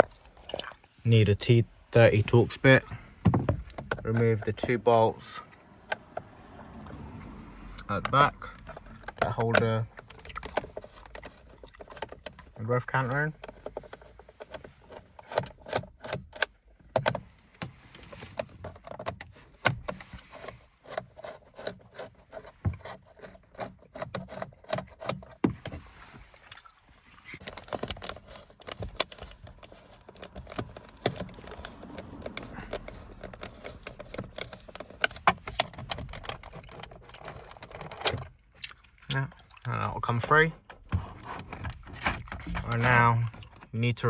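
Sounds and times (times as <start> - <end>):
plastic trim scraping: 18.0 - 26.6, 27.2 - 43.6.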